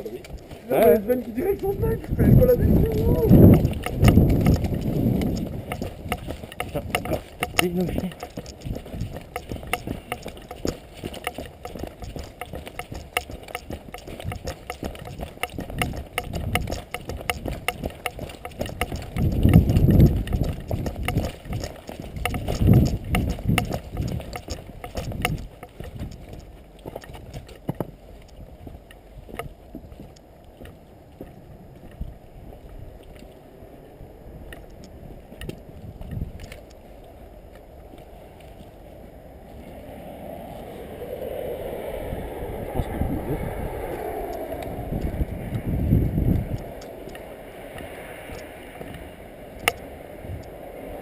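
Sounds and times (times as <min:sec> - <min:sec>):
low rumbling swells: 0:00.0 - 0:13.1, 0:38.9 - 0:47.7
footsteps: 0:00.0 - 0:33.4
rustling near microphone: 0:00.0 - 0:33.5.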